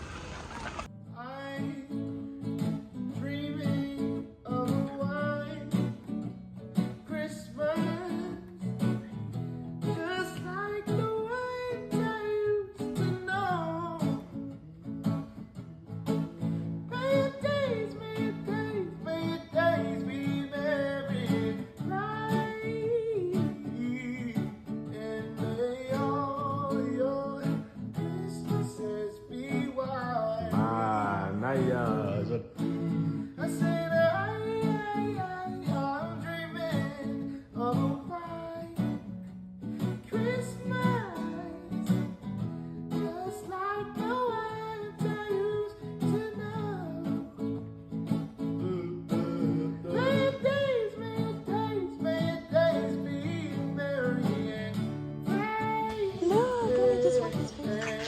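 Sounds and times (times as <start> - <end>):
acoustic guitar pop song: 0.0 - 58.0
person singing: 16.9 - 38.8, 48.6 - 58.0.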